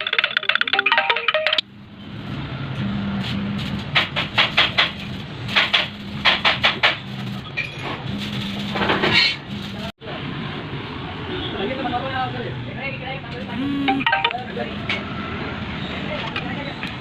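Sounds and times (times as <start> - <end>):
chime-like music melody: 0.5 - 1.6, 13.9 - 14.4.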